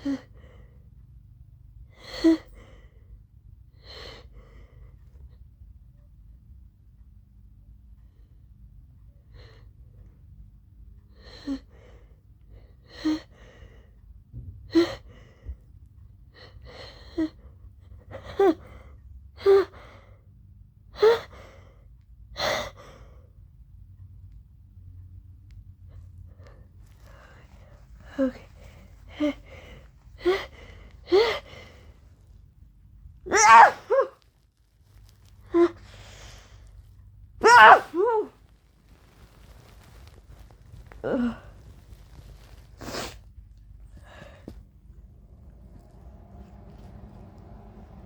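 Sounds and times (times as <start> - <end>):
woman sneezing: 37.4 - 38.3.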